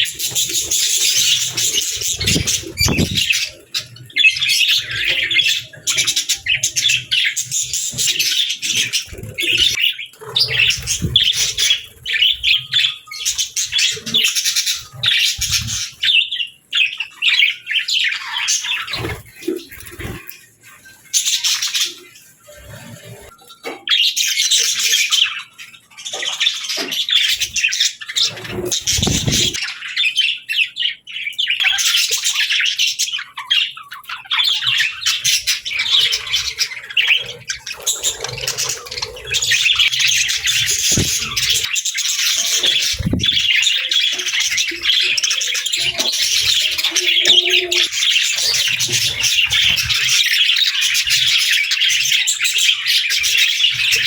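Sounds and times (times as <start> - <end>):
budgies chirping and squawking: 0.0 - 54.0
low thumps: 2.3 - 3.3.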